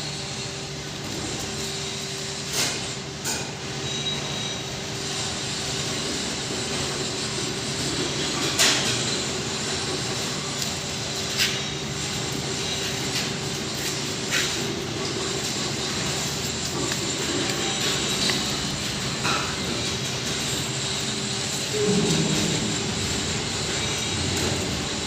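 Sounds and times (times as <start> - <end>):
grain grinder humming: 9.2 - 25.0.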